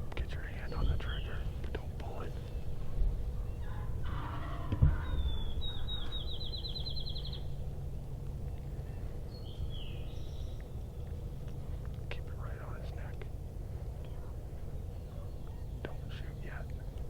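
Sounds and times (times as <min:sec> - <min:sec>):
songbird trilling: 0:00.0 - 0:11.0
low rumble: 0:00.0 - 0:17.0.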